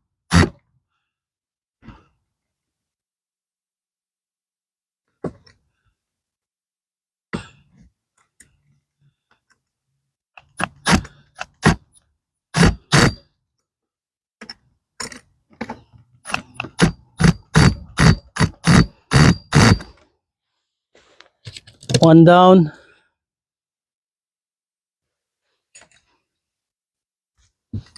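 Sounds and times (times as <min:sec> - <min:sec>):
impact driver driving screw into wood: 0:00.3 - 0:00.6, 0:10.4 - 0:11.9, 0:12.6 - 0:13.2, 0:16.3 - 0:20.0.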